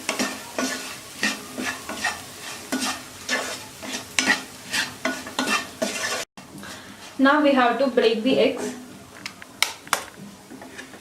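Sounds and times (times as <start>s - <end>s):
utensil scraping pan: 0.0s - 6.3s
peas sizzling in oil: 0.0s - 11.0s.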